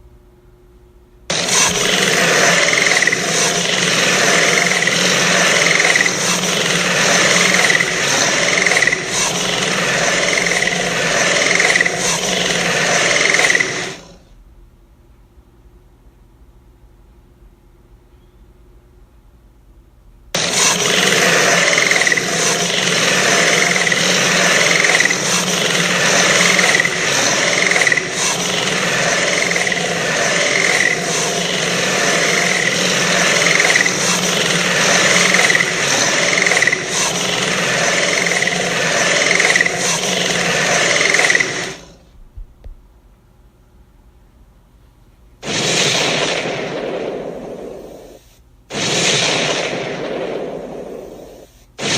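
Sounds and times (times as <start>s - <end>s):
harsh rattling monster noise: 1.3s - 14.3s, 20.4s - 42.1s, 45.4s - 51.9s.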